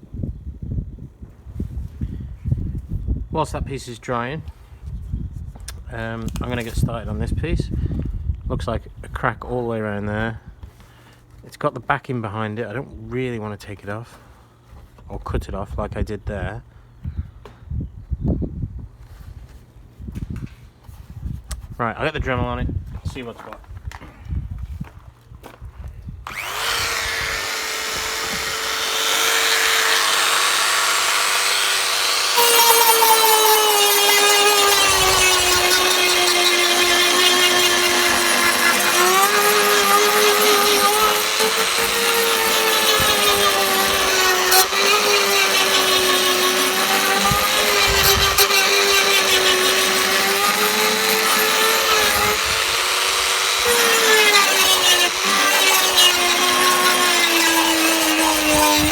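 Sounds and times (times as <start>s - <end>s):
rotary tool whining: 26.3s - 58.9s.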